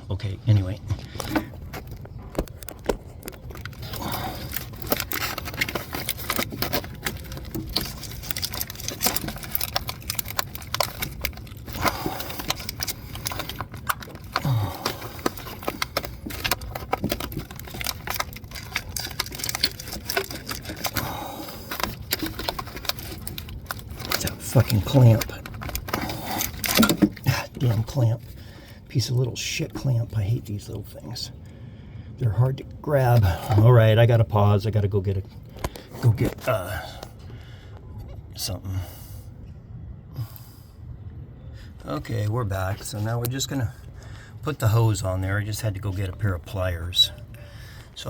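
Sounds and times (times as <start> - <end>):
hose and clamp clicking and scraping: 1.1 - 28.5.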